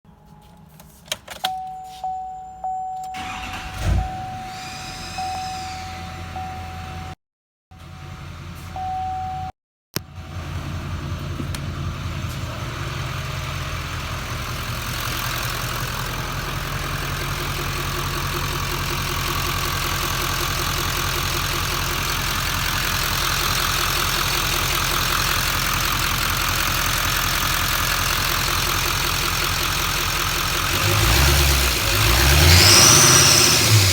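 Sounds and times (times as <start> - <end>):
hissing whistle: 3.8 - 6.7
diesel engine idling: 10.1 - 33.9.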